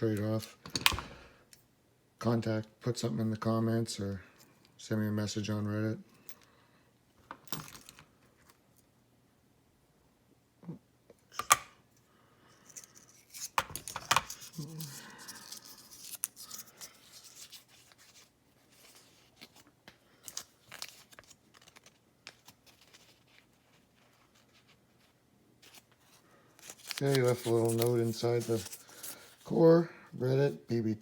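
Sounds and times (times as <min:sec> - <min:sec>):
rustling: 0:14.3 - 0:29.6.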